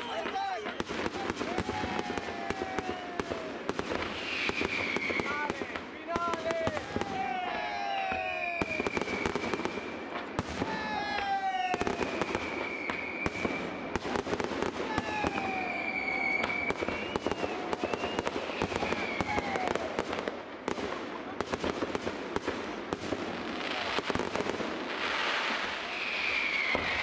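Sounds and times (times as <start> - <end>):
falling firework whistles: 0.0 - 5.6, 6.8 - 20.0, 24.9 - 27.0
fireworks crackling and popping: 0.0 - 27.0.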